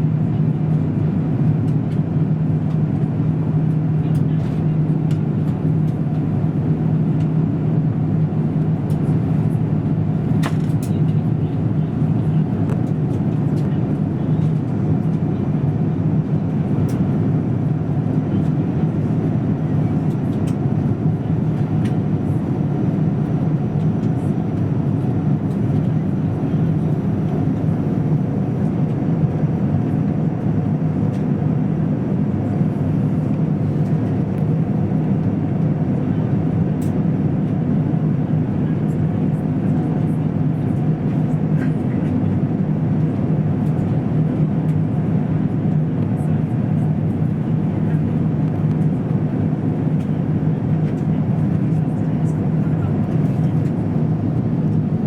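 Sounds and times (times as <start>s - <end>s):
airplane cabin engine roar: 0.0s - 55.0s.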